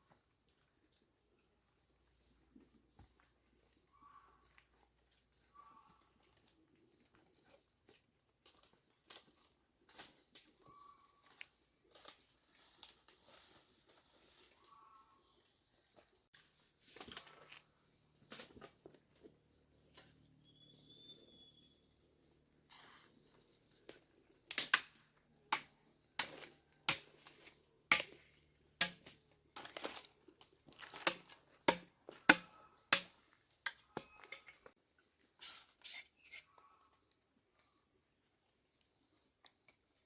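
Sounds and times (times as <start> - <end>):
faint chirps: 20.4 - 24.1.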